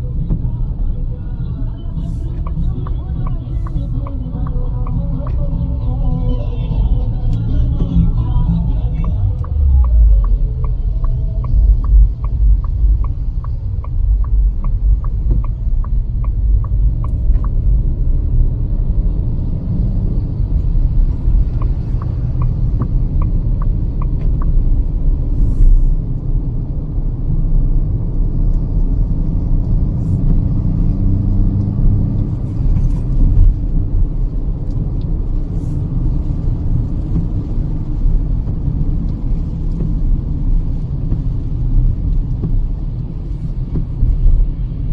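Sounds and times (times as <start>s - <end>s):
road and engine rumble: 0.0s - 44.9s
fast light ticking: 7.8s - 17.8s.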